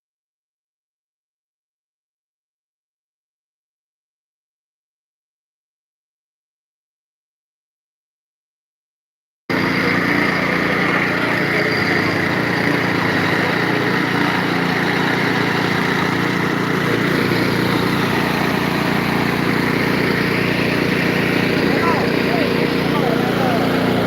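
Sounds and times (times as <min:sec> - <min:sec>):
machinery engine running loudly: 0:09.5 - 0:24.0.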